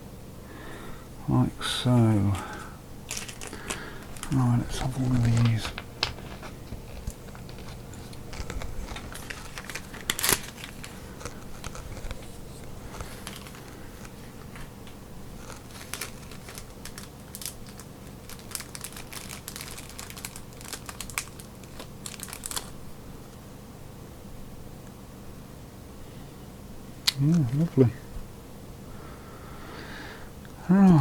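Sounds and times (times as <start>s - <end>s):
plastic packaging crinkling: 2.2s - 23.0s, 27.0s - 27.9s.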